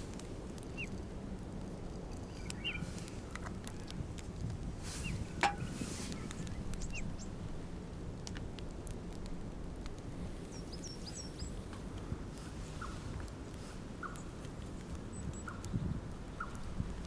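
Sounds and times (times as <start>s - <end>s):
low outdoor background rumble: 0.0s - 17.0s
small birds chirping: 0.7s - 1.0s, 2.2s - 3.9s, 5.0s - 7.4s, 10.3s - 17.0s.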